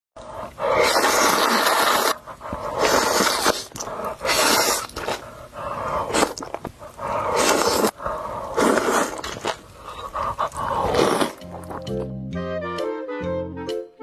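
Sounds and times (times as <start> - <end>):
noodles being slurped: 0.4 - 11.9.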